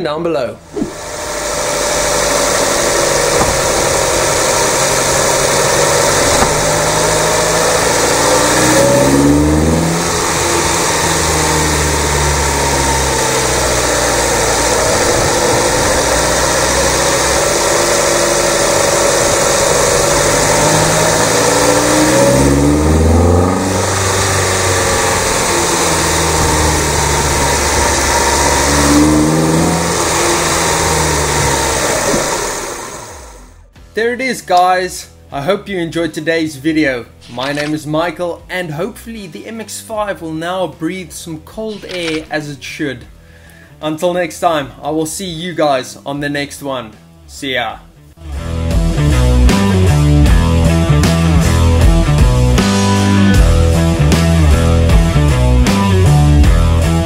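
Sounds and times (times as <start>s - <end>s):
steady rushing noise: 0.6s - 33.5s
car engine revving: 0.6s - 33.8s, 37.1s - 38.2s, 41.6s - 42.6s, 48.2s - 57.0s.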